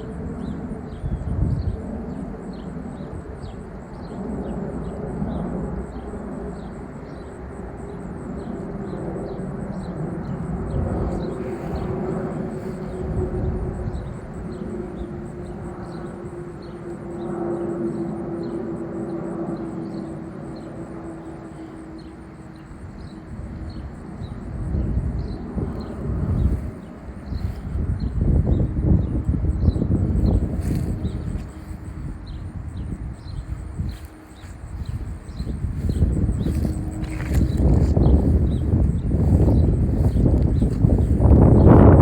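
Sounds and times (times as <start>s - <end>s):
jet engine rumble: 0.0s - 42.0s
jet engine whine: 0.0s - 42.0s.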